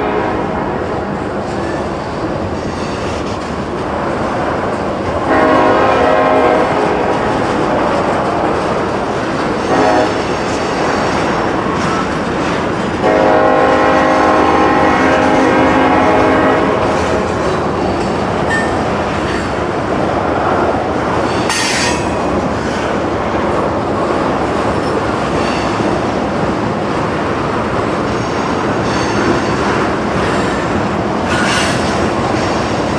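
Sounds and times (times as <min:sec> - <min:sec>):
locomotive air horn: 0:00.0 - 0:00.8, 0:05.3 - 0:07.3, 0:09.6 - 0:11.2, 0:13.0 - 0:17.1
train wheels rumbling on rails: 0:00.0 - 0:32.9.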